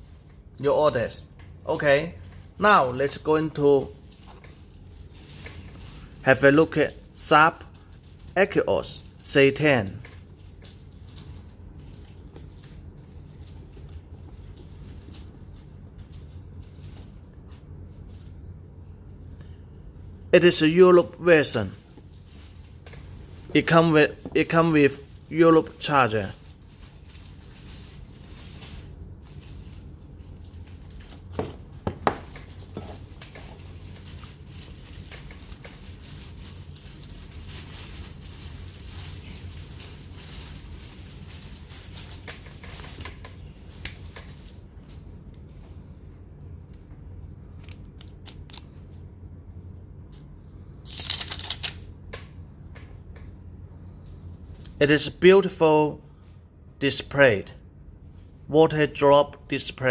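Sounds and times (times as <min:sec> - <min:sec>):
faint rustling of packaging: 0:00.0 - 0:51.9
steady low hum: 0:00.0 - 0:59.9
packaging rustling and clicking: 0:50.9 - 0:51.8.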